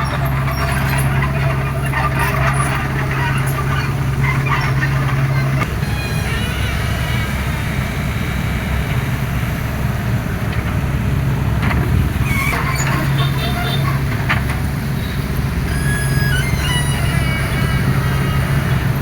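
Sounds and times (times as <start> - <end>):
short high squeaks and clicks: 0.0 - 7.2, 12.2 - 18.8
excavator diesel engine running: 0.0 - 19.0.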